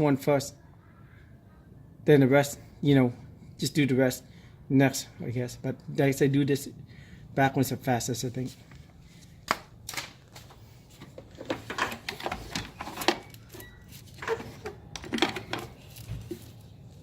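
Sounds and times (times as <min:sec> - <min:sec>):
rubbing and rustling: 0:10.4 - 0:17.0.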